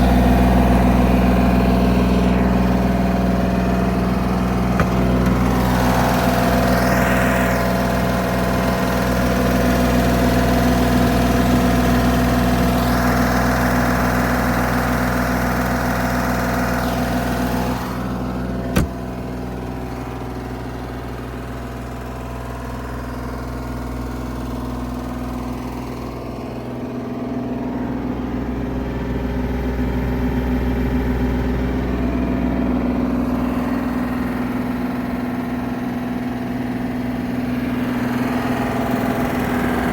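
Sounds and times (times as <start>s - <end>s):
diesel engine running: 0.0s - 39.9s
sharp click: 18.7s - 19.0s.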